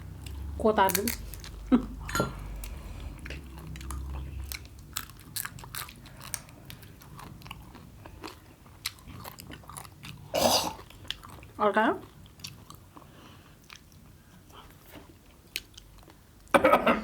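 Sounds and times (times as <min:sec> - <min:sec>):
chewing: 0:00.2 - 0:16.2
crab shell crunching: 0:00.3 - 0:01.6, 0:02.5 - 0:11.4.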